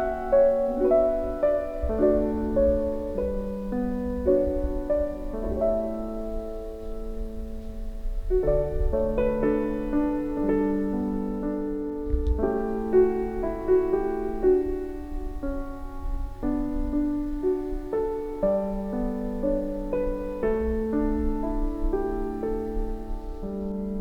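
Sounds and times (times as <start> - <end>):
soft slow piano music: 0.0 - 24.0.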